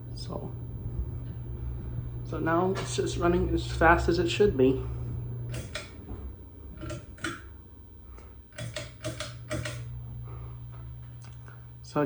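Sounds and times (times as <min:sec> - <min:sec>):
ceiling fan motor hum: 0:00.0 - 0:12.0
sharp mechanical clicks: 0:05.5 - 0:07.6, 0:08.2 - 0:10.0.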